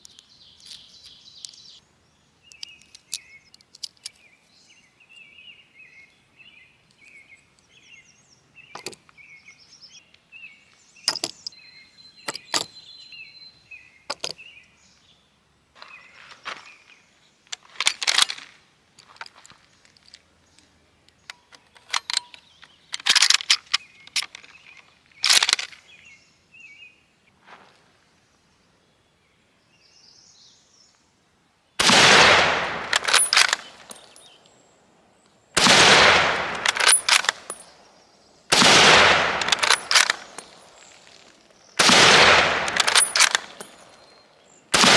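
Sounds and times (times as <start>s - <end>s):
birds chirping: 0.0s - 18.2s, 19.0s - 27.4s, 31.7s - 44.9s
sharp clicks and knocks: 8.8s - 9.2s, 11.1s - 11.5s, 14.1s - 14.4s, 32.4s - 34.3s, 35.6s - 37.7s, 38.5s - 40.8s, 41.8s - 44.1s
rifle shots ringing: 31.8s - 34.3s, 35.6s - 37.9s, 38.5s - 41.0s, 41.8s - 44.2s.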